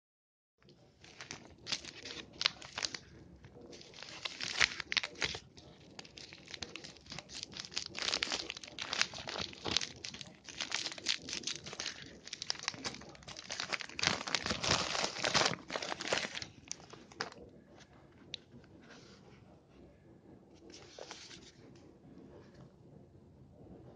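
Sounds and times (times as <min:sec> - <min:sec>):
packaging crinkling and tearing: 0:01.0 - 0:17.4.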